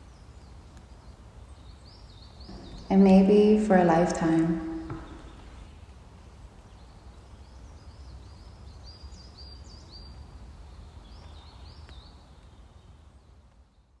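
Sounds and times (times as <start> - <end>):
steady low rumble: 2.5 - 5.8.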